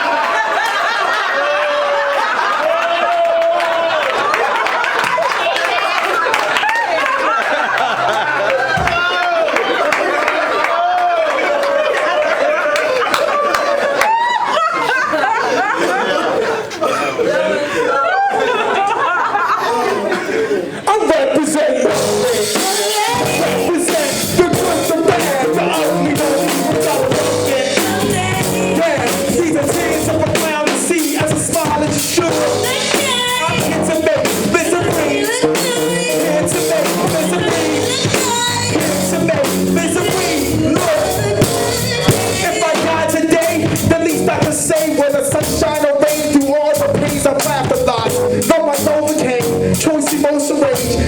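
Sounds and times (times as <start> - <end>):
person singing: 20.8 - 51.0
live rock band playing: 21.8 - 51.0.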